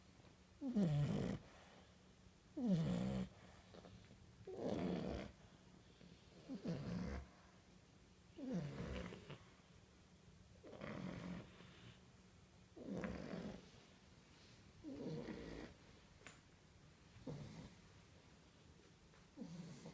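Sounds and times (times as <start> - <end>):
puppies snoring: 0.6 - 7.6, 8.3 - 9.7, 10.6 - 12.1, 12.7 - 16.0, 17.1 - 18.1, 19.3 - 19.9.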